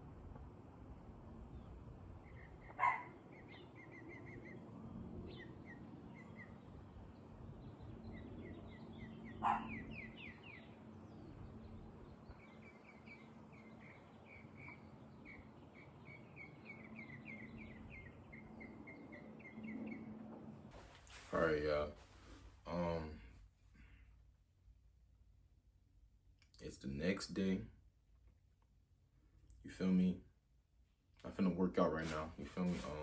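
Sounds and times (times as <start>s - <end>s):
small birds chirping: 1.2s - 21.9s, 31.2s - 33.0s.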